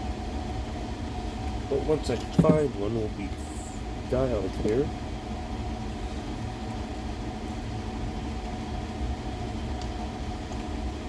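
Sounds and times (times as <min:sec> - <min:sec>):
steady low hum: 0:01.1 - 0:07.2.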